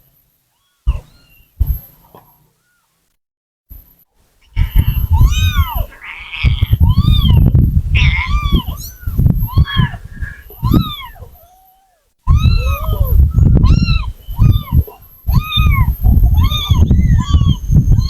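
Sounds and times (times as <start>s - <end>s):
low rumbling noise: 3.7s - 11.4s
kitten meowing: 4.4s - 18.0s.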